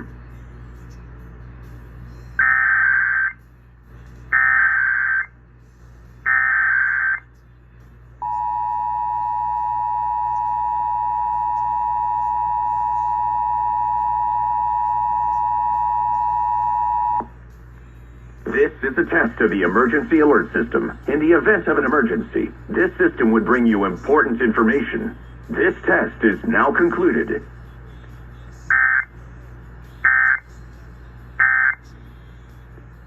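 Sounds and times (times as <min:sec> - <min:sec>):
two-tone attention signal: 0:08.2 - 0:17.3
warbling data tone bursts: 0:08.2 - 0:17.3.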